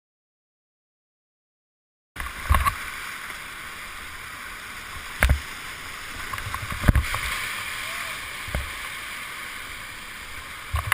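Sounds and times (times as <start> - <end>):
river rushing: 2.2 - 10.9.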